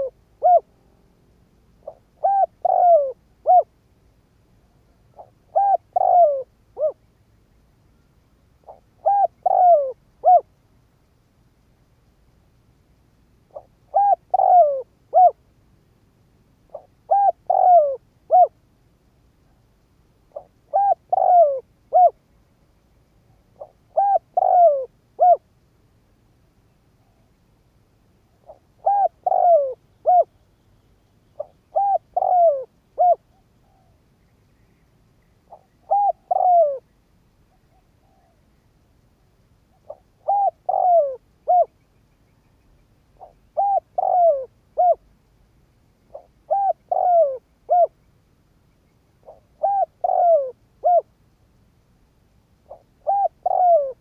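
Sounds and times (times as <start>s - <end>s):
dove cooing: 0.0s - 0.8s, 1.8s - 3.7s, 5.1s - 7.0s, 8.6s - 10.5s, 13.5s - 15.4s, 16.7s - 18.6s, 20.3s - 22.2s, 23.3s - 25.5s, 28.4s - 30.4s, 31.4s - 34.0s, 35.5s - 36.9s, 37.5s - 38.4s, 39.7s - 41.8s, 43.2s - 45.1s, 46.1s - 48.0s, 49.2s - 51.1s, 52.6s - 54.0s.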